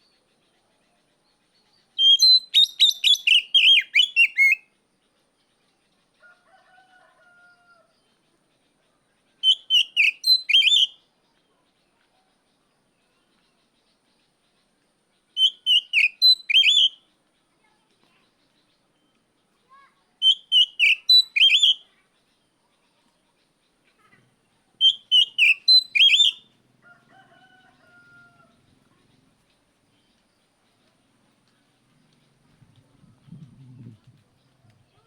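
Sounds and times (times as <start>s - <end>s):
songbird whistled phrase: 2.0s - 4.6s, 9.4s - 11.0s, 15.4s - 17.0s, 20.2s - 21.9s, 24.8s - 26.5s.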